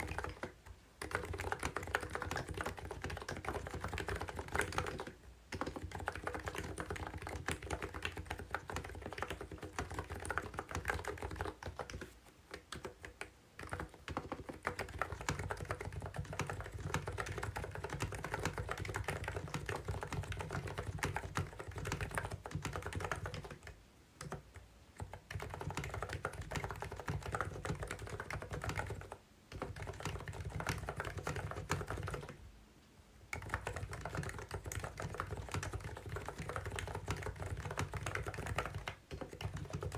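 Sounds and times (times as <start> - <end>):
fast typing on keyboard: 0.0 - 32.4, 33.3 - 39.9.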